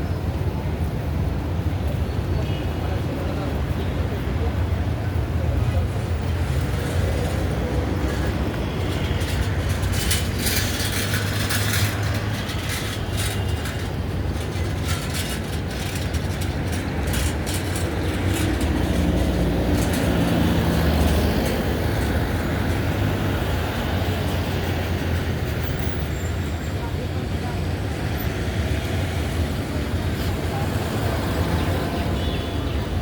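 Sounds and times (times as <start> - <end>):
low vehicle rumble: 5.0 - 25.7
light rattling clicks: 6.6 - 22.9.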